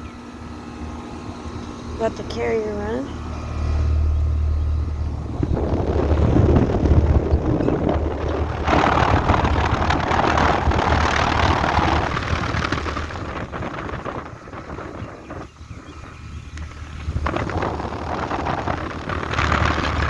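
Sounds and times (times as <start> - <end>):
air conditioner unit humming: 0.0 - 20.0
fan rushing: 0.0 - 20.0.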